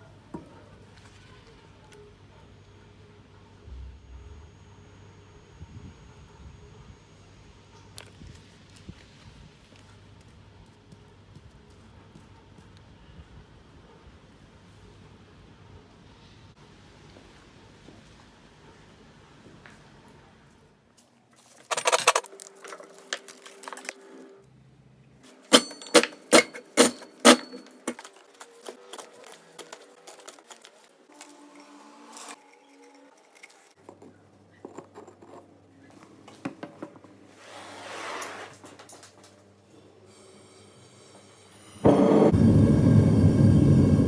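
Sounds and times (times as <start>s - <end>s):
metal clattering: 25.5s - 28.2s
gas burner roaring: 41.8s - 44.0s.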